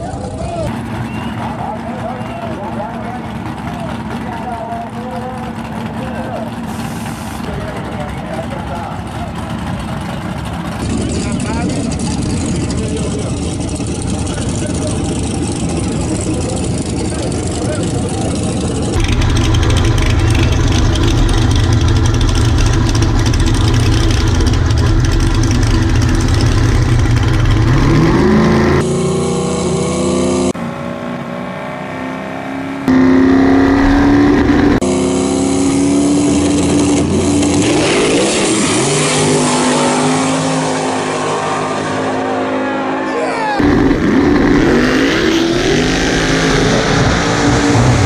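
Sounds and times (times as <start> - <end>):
racing car engine accelerating: 0.7 - 48.0.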